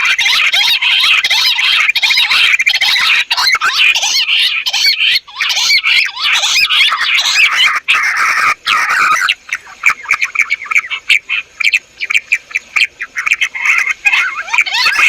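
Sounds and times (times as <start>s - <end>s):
quail calling in chorus: 0.0s - 15.0s.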